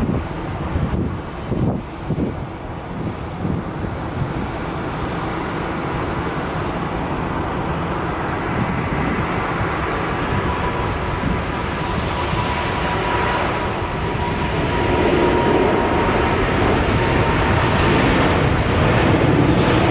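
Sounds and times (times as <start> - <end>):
jet airliner engines: 0.0 - 19.9
thin engine whine: 5.0 - 19.9.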